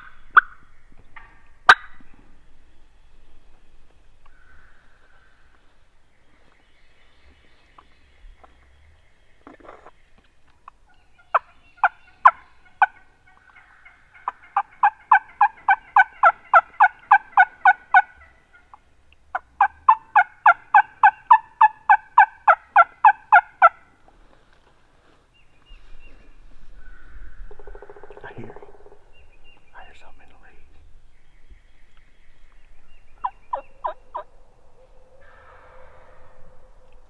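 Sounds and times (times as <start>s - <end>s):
turkey yelps: 11.3s - 23.9s, 33.2s - 34.3s.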